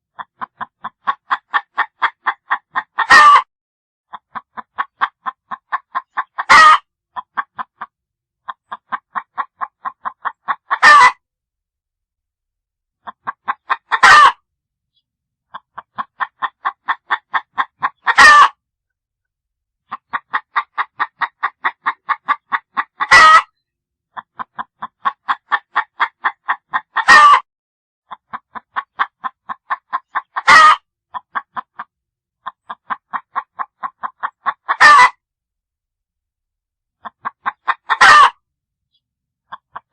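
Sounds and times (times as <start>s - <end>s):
hen cackling: 0.2s - 3.5s, 4.1s - 11.2s, 13.0s - 14.4s, 15.5s - 18.6s, 19.9s - 23.5s, 24.2s - 27.4s, 28.1s - 35.2s, 37.0s - 38.4s.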